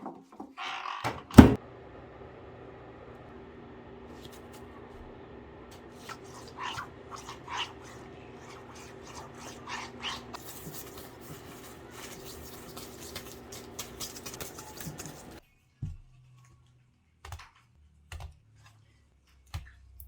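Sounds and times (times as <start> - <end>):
steady low hum: 1.3 - 15.4
food preparation clicks and taps: 10.7 - 15.4.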